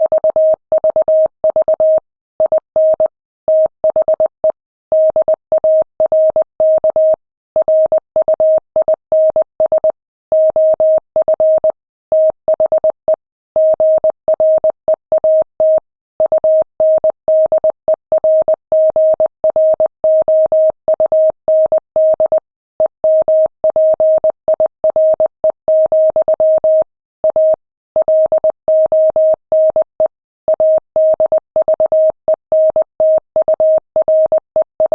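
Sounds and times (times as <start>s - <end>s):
morse code beeps: 23.1s - 34.9s.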